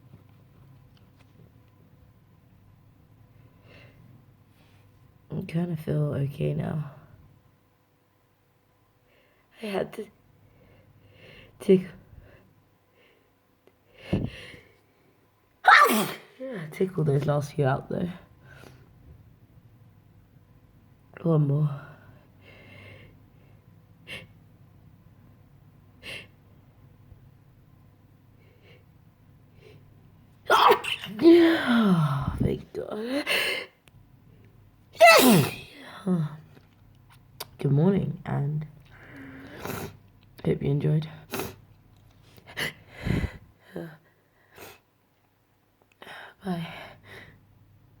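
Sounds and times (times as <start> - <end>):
person sighing: 30.6 - 32.2
person breathing and sniffing: 39.0 - 40.0.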